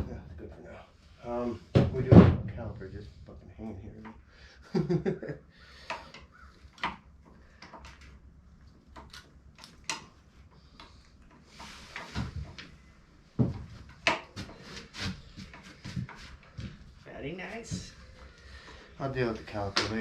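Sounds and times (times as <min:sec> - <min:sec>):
heavy thumps: 0:01.7 - 0:03.4.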